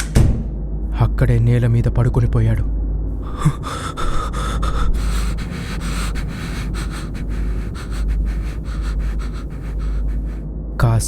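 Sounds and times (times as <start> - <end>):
low steady drone: 3.2 - 10.4
man panting heavily: 3.2 - 10.4.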